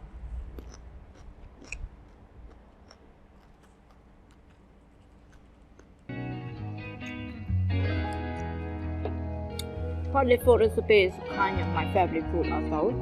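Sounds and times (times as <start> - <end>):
person chewing food: 0.0 - 6.2
strummed guitar music: 6.1 - 13.0.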